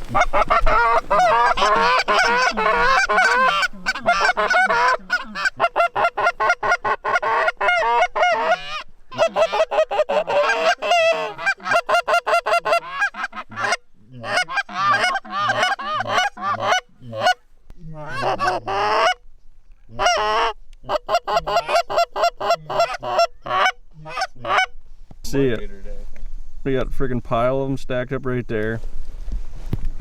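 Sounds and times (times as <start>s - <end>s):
goose calls honking: 0.0s - 17.4s, 18.0s - 19.2s, 19.9s - 24.7s.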